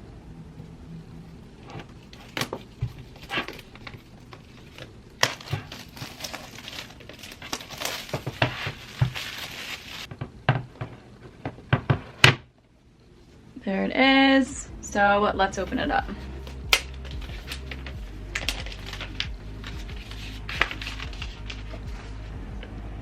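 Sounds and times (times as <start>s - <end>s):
packaging crinkling and tearing: 1.8s - 10.1s, 16.5s - 22.2s.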